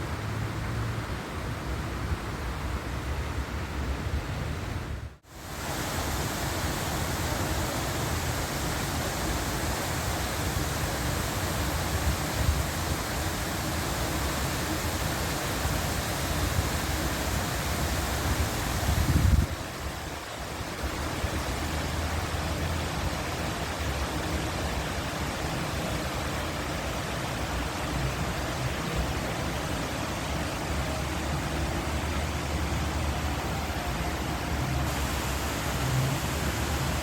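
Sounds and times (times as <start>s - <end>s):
waterfall rushing: 5.3s - 37.0s.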